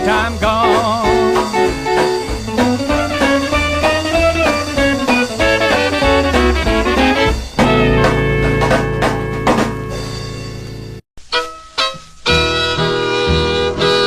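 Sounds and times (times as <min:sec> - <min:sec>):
drums and steady bass: 0:00.0 - 0:11.0
country band guitar passage: 0:00.0 - 0:14.0.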